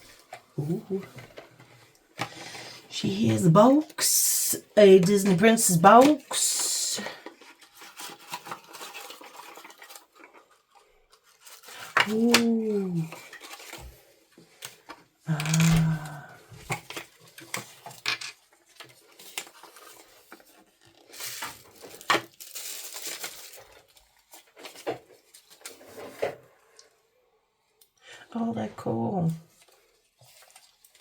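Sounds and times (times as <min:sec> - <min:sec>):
person saying ooh: 0:00.6 - 0:01.1, 0:12.0 - 0:13.2, 0:15.3 - 0:16.4
short vocal sound: 0:00.6 - 0:01.2, 0:15.3 - 0:16.4
packaging rustling and tearing: 0:04.9 - 0:26.4, 0:29.5 - 0:31.0.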